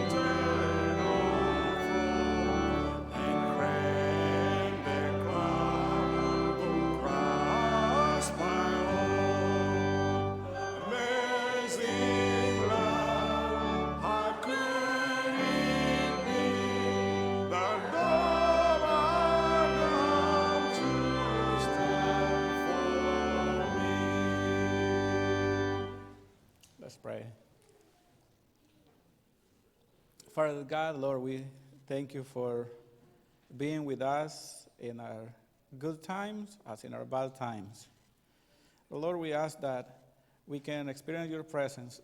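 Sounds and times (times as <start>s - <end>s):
people singing a hymn: 0.0s - 26.2s
organ chords: 0.0s - 26.3s.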